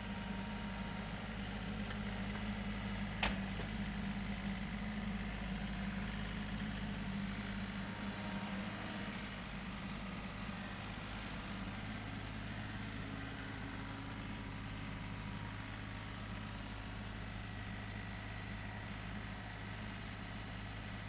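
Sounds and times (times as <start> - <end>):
tractor engine running: 0.0 - 21.0.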